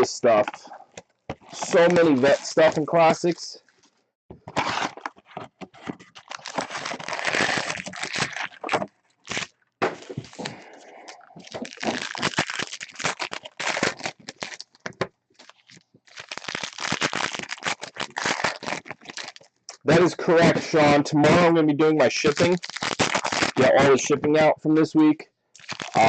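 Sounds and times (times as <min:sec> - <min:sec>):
wrappers tearing and crinkling: 0:01.4 - 0:03.2, 0:04.5 - 0:19.5, 0:22.2 - 0:24.0, 0:25.6 - 0:26.0.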